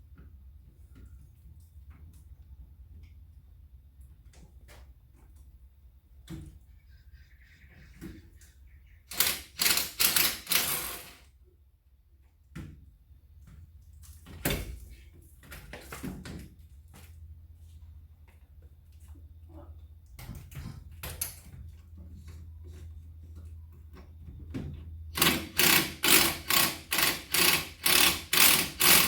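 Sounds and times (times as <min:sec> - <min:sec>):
hand tools clicking and knocking: 0:09.1 - 0:11.2.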